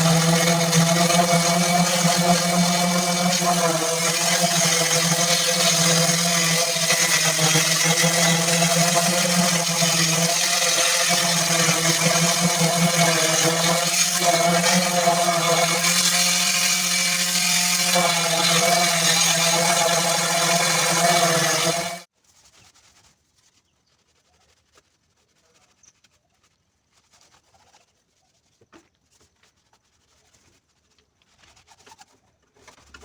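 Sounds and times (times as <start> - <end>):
power sander running: 0.0 - 22.1.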